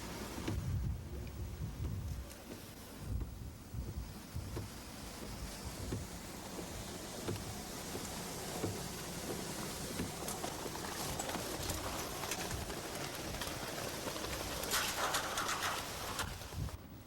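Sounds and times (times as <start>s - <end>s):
wind noise on microphone: 0.0s - 7.6s, 10.0s - 17.0s
low knocks and thumps: 0.4s - 16.8s
rushing rain: 4.6s - 16.8s.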